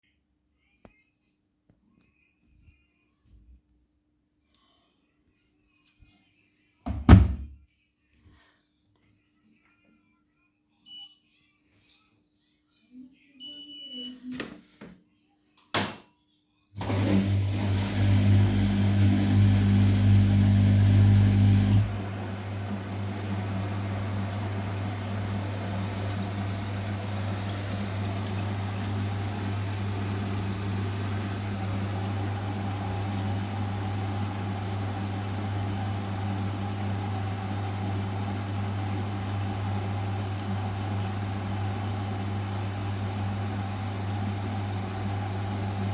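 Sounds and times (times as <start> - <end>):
washing machine humming and rushing: 16.8 - 45.9.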